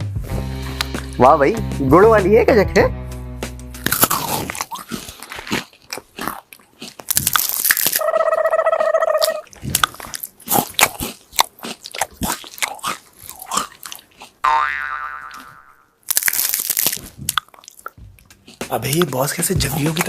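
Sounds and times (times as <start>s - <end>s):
crunching and chewing: 3.8s - 8.1s, 8.8s - 14.4s, 15.3s - 20.0s.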